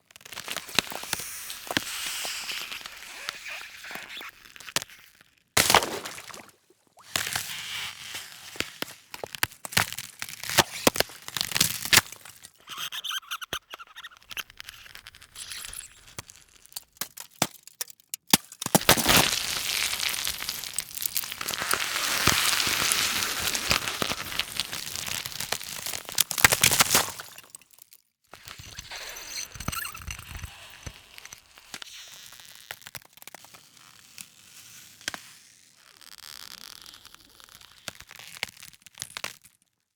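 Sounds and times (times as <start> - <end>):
ice cracking and snapping: 0.2 - 12.6, 13.7 - 28.0
ice crunching and crackling: 0.2 - 28.0.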